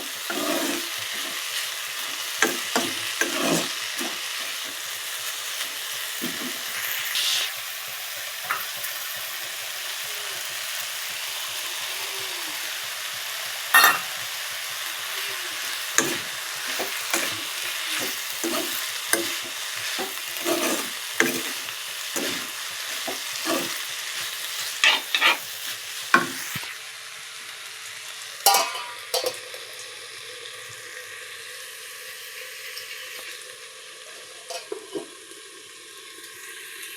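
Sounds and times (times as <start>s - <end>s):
spatula scraping and tapping pan: 0.0s - 4.9s, 5.6s - 7.5s, 8.4s - 9.2s, 13.8s - 14.2s, 15.9s - 26.7s
vegetable sizzling in oil: 0.0s - 36.9s.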